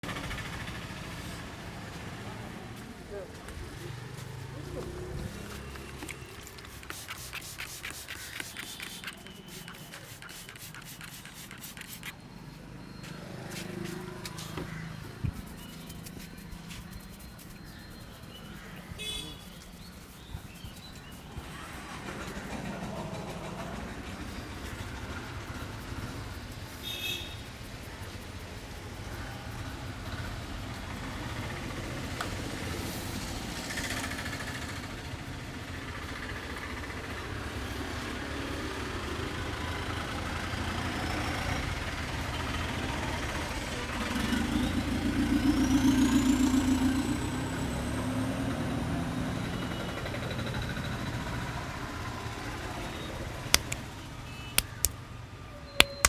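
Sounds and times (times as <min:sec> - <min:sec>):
traffic rumble: 0:00.0 - 0:51.9
vehicle passing: 0:00.1 - 0:08.3
sharp smacks: 0:53.6 - 0:53.8, 0:54.6 - 0:55.0.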